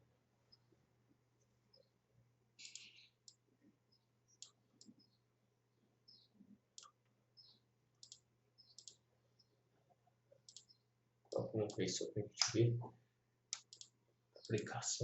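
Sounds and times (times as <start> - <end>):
computer mouse clicks: 2.6 - 3.4, 4.4 - 5.1, 6.1 - 9.0, 10.4 - 12.6, 13.5 - 14.7.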